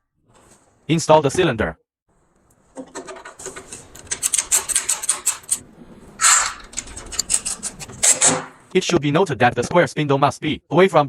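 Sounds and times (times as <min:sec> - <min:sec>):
short scraping rub: 0:03.3 - 0:08.7.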